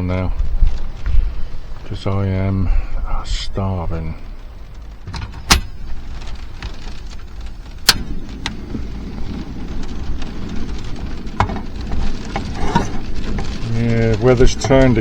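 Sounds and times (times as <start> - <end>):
rain and wind on a car: 0.0 - 15.0
sharp clicks and knocks: 4.7 - 9.3, 10.7 - 15.0.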